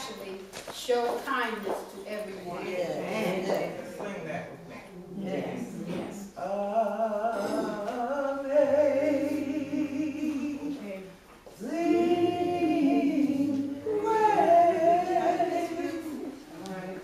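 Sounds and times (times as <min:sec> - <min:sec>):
group singing a slow hymn: 0:05.0 - 0:17.0.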